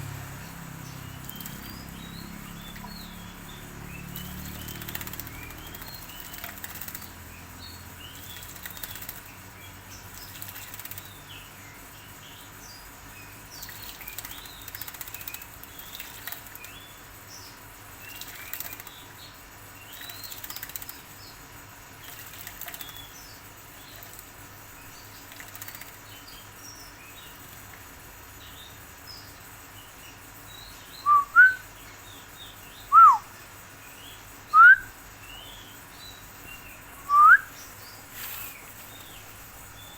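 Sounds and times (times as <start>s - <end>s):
soft bird chirps: 0.9s - 21.4s, 28.4s - 39.9s
bird wings fluttering: 8.4s - 9.3s
loud whistled notes: 31.1s - 31.7s, 32.9s - 33.3s, 34.5s - 34.9s, 37.1s - 37.5s.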